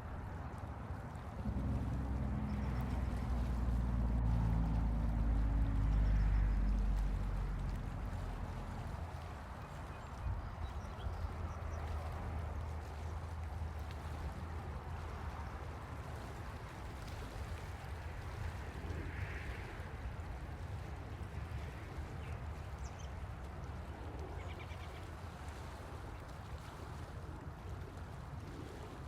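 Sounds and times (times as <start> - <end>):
steady rushing noise: 0.0 - 29.0
low rumble: 1.0 - 23.3.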